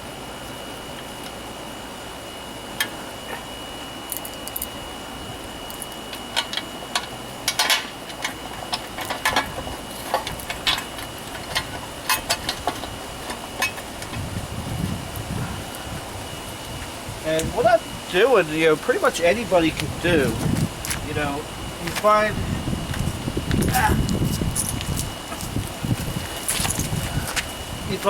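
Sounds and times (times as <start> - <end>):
clinks of engine parts and tools: 5.7 - 14.2.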